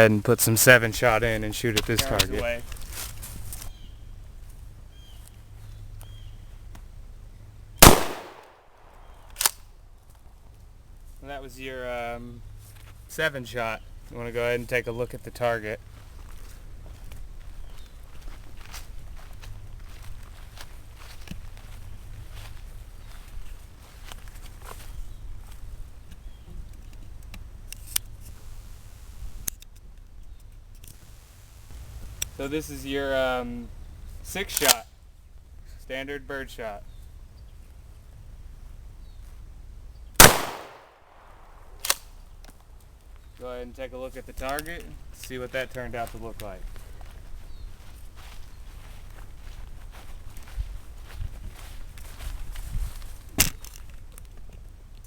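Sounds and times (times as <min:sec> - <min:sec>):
shotgun shot: 0:07.8 - 0:09.2, 0:40.2 - 0:42.0.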